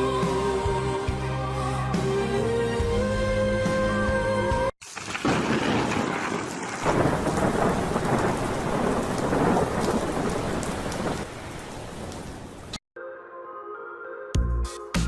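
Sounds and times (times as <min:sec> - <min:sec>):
heavy rain: 0:04.8 - 0:12.8
rumbling thunder: 0:05.0 - 0:12.5.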